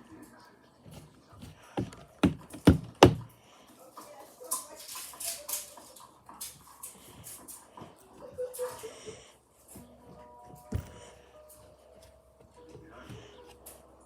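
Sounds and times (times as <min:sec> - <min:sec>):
dough rustling and scraping: 0:00.6 - 0:03.3
dull thumps on tabletop: 0:01.8 - 0:03.3.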